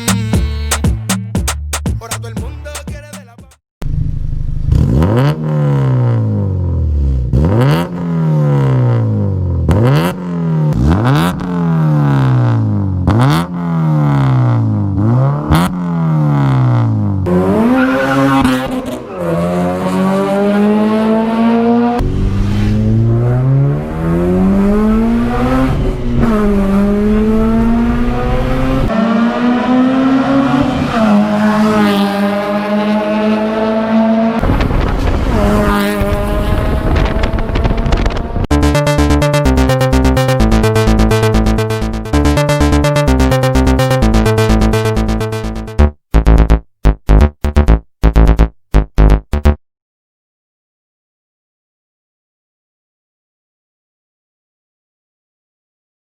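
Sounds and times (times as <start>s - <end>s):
car engine accelerating through gears: 4.6s - 45.8s
car engine revving: 4.7s - 34.6s.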